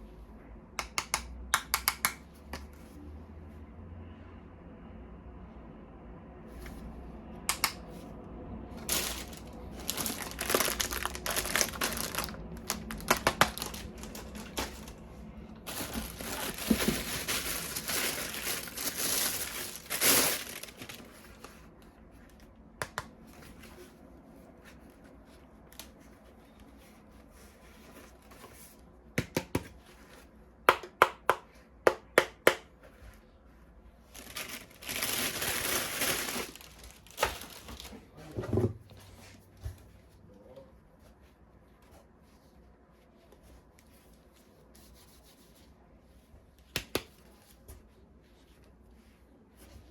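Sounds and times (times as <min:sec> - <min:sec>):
plastic packaging crinkling: 0:08.8 - 0:21.6, 0:34.1 - 0:38.0.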